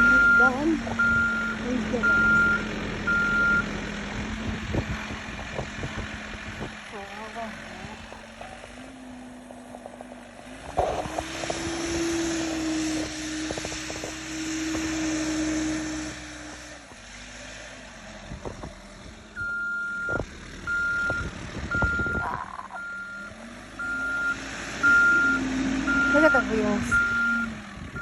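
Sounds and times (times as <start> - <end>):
reversing alarm beeping: 0.0 - 3.7, 19.4 - 28.0
backhoe engine revving: 0.0 - 28.0.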